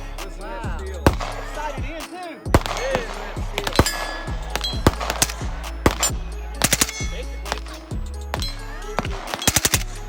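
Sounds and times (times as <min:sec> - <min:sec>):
background music: 0:00.0 - 0:10.0
gunshots: 0:02.5 - 0:09.9.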